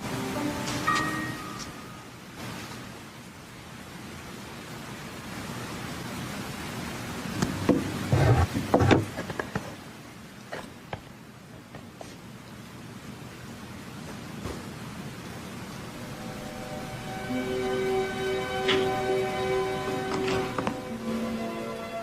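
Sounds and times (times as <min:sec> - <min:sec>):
steady hiss: 0:00.0 - 0:22.0.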